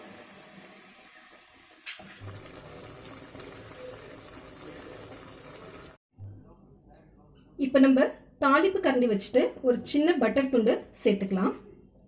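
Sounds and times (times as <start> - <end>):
pressure cooker hissing: 0.0 - 6.0.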